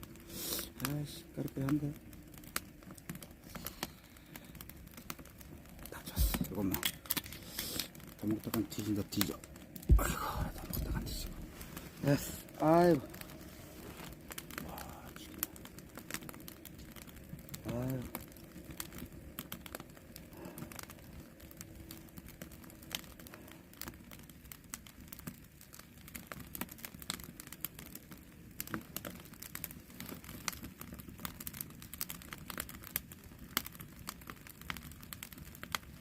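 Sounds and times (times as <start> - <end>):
campfire crackling: 0.0 - 36.0.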